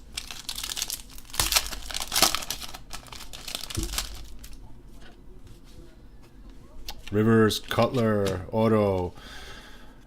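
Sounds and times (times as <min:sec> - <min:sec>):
foil wrapper crinkling and tearing: 0:00.0 - 0:04.6.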